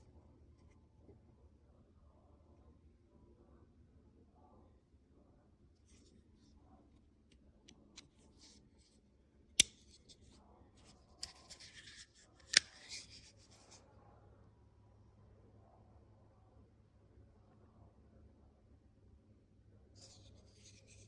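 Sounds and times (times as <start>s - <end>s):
pocket knife blade snapping: 9.6s - 9.8s, 12.4s - 13.1s
knife handling scraping: 11.2s - 13.8s.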